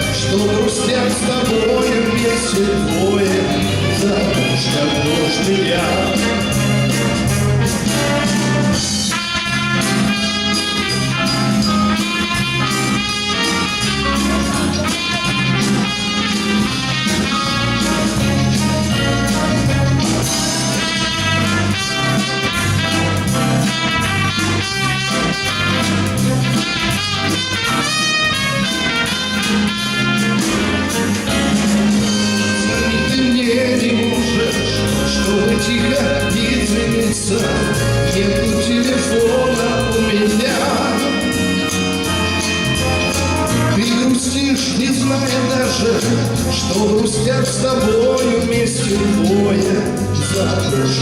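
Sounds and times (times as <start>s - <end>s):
instrumental pop music: 0.0s - 51.0s.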